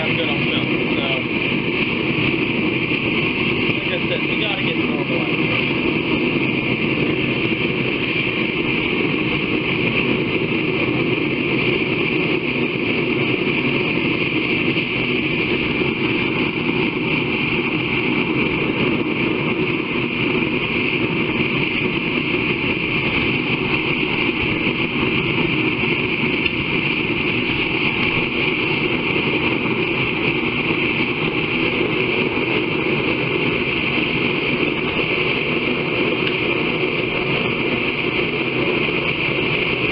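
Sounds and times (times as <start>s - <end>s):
forge rushing noise: 0.0s - 39.9s.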